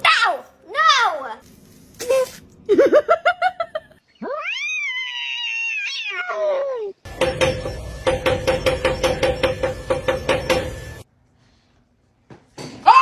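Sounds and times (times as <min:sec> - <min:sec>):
cat yowling meow: 0:04.2 - 0:07.0.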